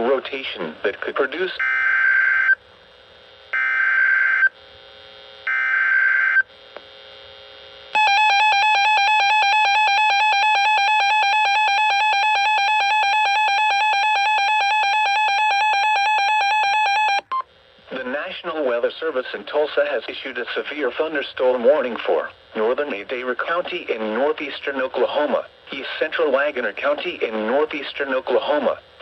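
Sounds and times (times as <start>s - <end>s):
screeching digital header tones: 8.0s - 17.2s
long steady alert tone: 8.0s - 17.4s.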